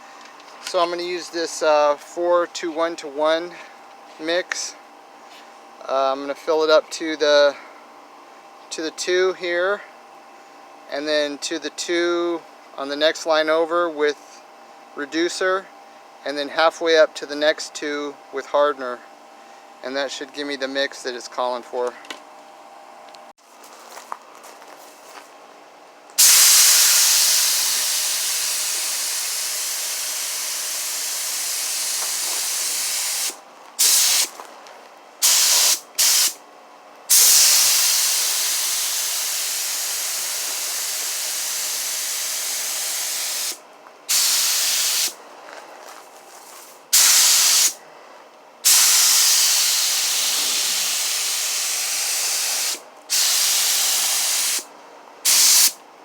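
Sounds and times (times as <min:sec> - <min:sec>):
paint spray gun hissing: 0:26.2 - 0:34.3, 0:35.2 - 0:36.4, 0:37.1 - 0:45.2, 0:46.9 - 0:47.8, 0:48.6 - 0:55.8.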